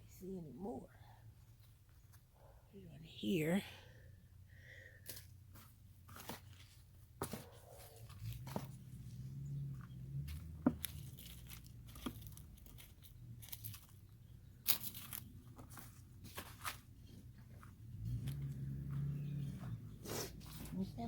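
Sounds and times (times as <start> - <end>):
hands rummaging through soil: 5.0 - 21.0
crunches and tearing sounds: 10.3 - 16.8.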